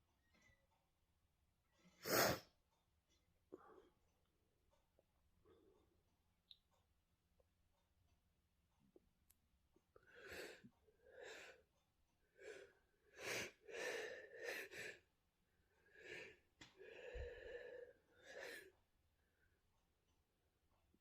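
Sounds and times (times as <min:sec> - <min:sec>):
person gasping and sniffing: 0:02.0 - 0:02.4.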